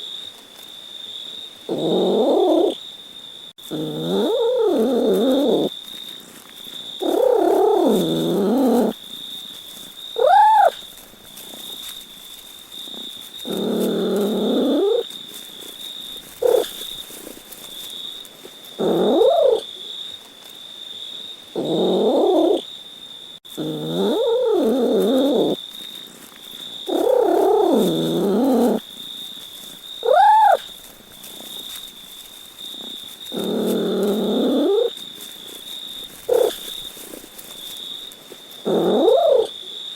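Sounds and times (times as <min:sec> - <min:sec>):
cat meowing: 0:10.2 - 0:10.8, 0:16.4 - 0:16.7, 0:18.9 - 0:19.6, 0:30.0 - 0:30.7, 0:38.8 - 0:39.5.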